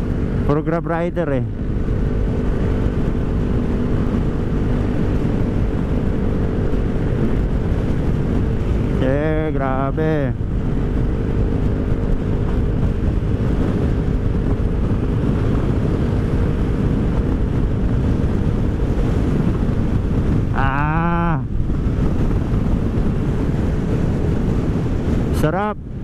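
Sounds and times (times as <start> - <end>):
wind rush on microphone: 0.0 - 26.0
scooter engine running: 1.5 - 9.4.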